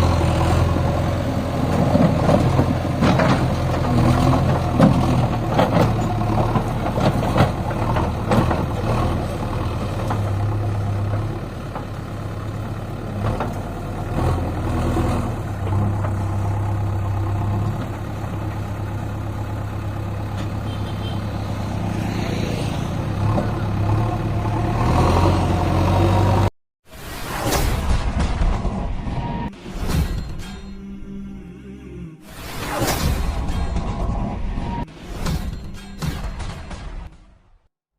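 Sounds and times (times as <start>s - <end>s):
diesel engine running under load: 0.0s - 26.5s
knocks and clanks: 1.6s - 9.3s, 32.8s - 37.6s.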